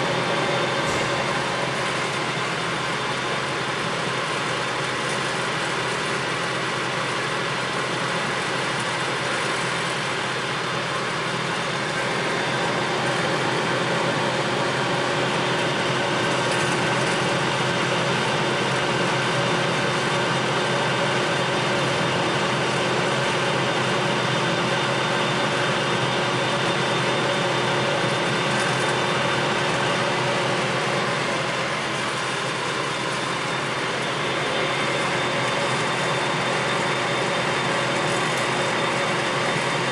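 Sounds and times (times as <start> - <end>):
lathe running: 0.0 - 3.6, 12.0 - 39.9.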